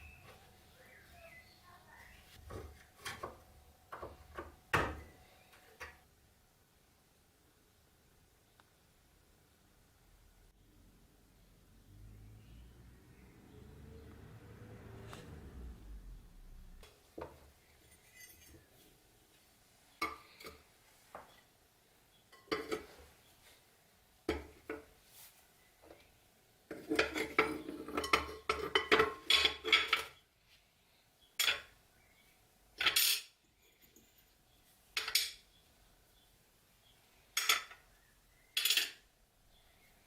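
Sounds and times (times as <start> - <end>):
metal parts and tools clinking: 17.8 - 18.7, 26.7 - 30.2, 32.8 - 34.4, 35.0 - 35.4, 38.5 - 39.0.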